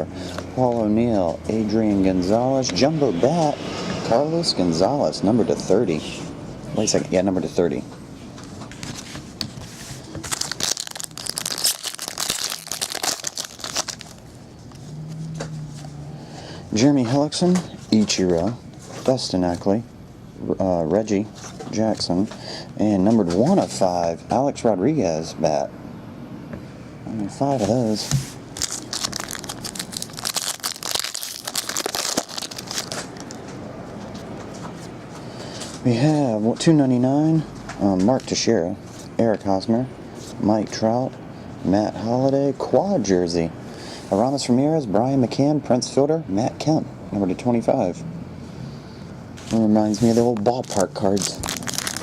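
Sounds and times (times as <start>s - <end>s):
card packaging crinkling: 10.1s - 14.3s, 27.6s - 33.4s, 49.4s - 52.0s.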